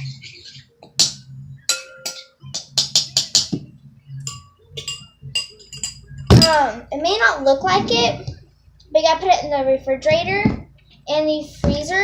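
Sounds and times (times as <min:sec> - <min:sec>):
utensil clinking against glass: 0:04.3 - 0:06.6.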